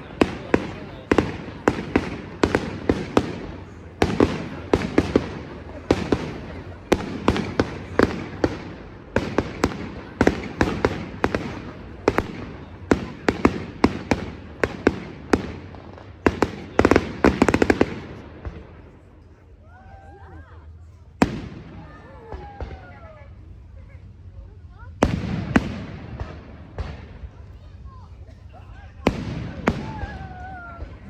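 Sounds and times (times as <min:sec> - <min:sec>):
fireworks bursting with bangs: 0:00.0 - 0:19.3, 0:21.1 - 0:23.4, 0:24.9 - 0:27.5, 0:29.0 - 0:31.0.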